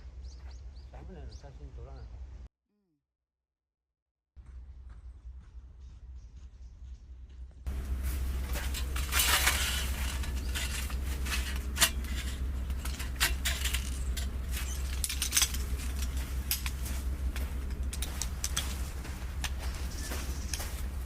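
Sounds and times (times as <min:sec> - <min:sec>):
steady low rumble: 0:04.4 - 0:21.0
hard objects clicking and clinking: 0:08.6 - 0:19.6.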